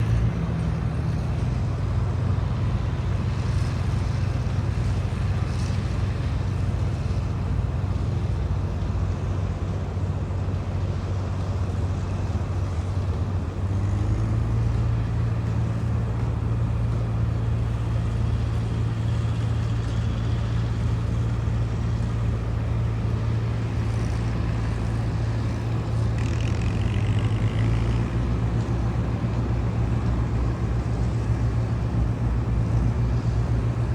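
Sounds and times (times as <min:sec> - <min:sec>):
tractor diesel engine running: 0:00.0 - 0:33.9.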